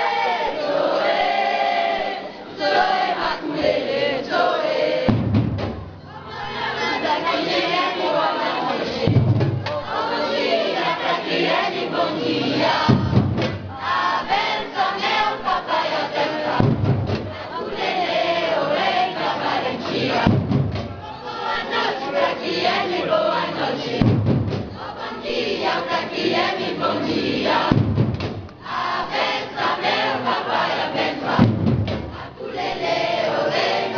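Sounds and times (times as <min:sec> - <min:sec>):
group singing: 0:00.0 - 0:33.9
percussion: 0:02.6 - 0:11.7, 0:12.3 - 0:22.9, 0:23.8 - 0:33.9
deep drum hits: 0:05.0 - 0:06.0, 0:09.0 - 0:09.9, 0:12.8 - 0:13.8, 0:16.5 - 0:17.5, 0:20.2 - 0:21.1, 0:24.0 - 0:24.8, 0:27.6 - 0:28.6, 0:31.4 - 0:32.4.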